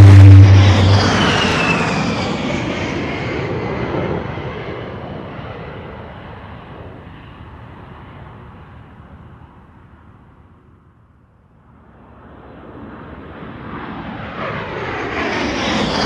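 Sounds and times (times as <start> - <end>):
cannon burst heavy low drone: 0.0 - 2.0
jet passing with falling whine: 0.0 - 3.2.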